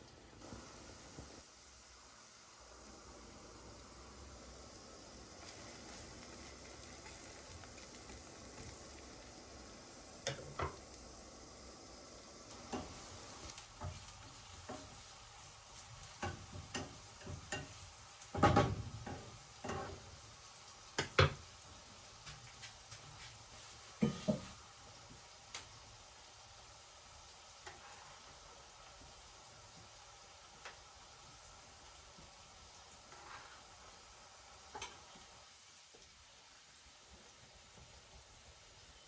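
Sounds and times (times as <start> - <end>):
food sizzling in a frying pan: 0.0 - 39.0.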